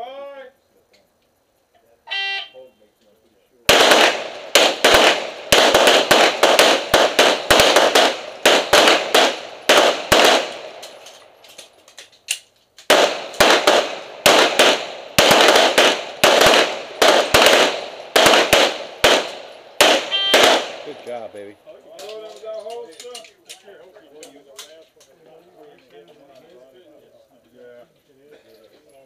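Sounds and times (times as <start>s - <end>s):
pistol firing: 3.7s - 11.7s, 12.3s - 21.0s.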